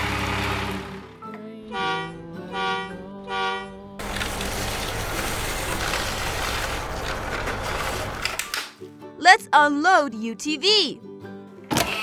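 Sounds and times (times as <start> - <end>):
vehicle horn toots: 1.7 - 3.8.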